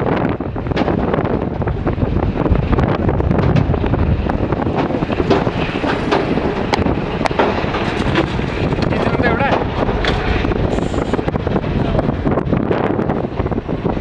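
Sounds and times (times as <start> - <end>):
wind buffeting microphone: 0.0 - 14.0
diesel engine running under load: 0.5 - 14.0
short knocks and clatter: 3.4 - 10.6.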